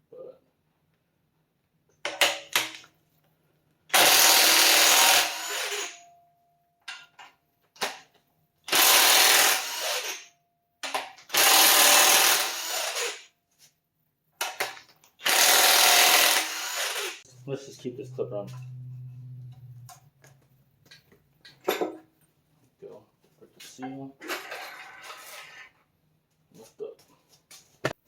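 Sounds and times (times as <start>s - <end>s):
power tool spinning fasteners: 3.9s - 6.0s, 8.7s - 10.3s, 11.2s - 13.3s, 14.5s - 17.2s.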